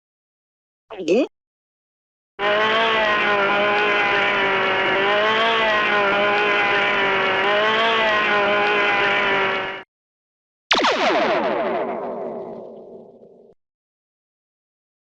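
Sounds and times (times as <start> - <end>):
buzzy engine-like cartoon drone: 2.4 - 9.9.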